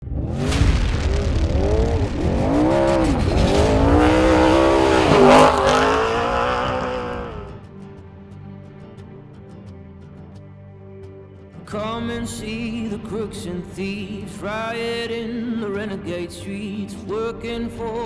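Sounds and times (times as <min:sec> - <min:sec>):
race vehicle engine revving: 0:00.0 - 0:07.6
music: 0:06.0 - 0:18.0.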